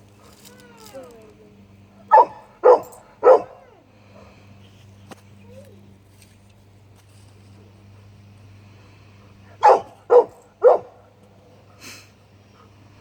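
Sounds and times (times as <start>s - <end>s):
dog barking: 2.1s - 3.7s, 9.6s - 11.1s.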